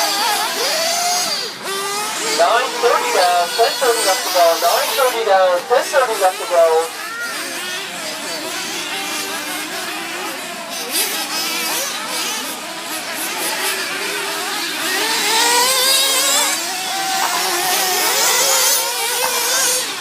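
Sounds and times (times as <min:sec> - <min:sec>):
rc car motors whining: 0:00.0 - 0:02.8, 0:07.0 - 0:20.0.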